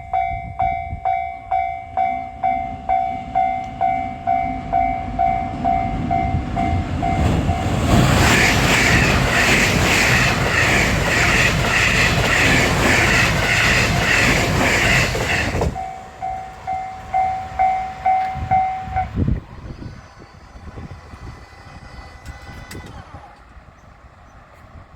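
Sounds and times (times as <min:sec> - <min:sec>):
level crossing warning bell: 0:00.0 - 0:07.8, 0:15.7 - 0:19.2
electric train rushing past: 0:00.0 - 0:24.9
train wheels clattering on rail joints: 0:06.6 - 0:18.8.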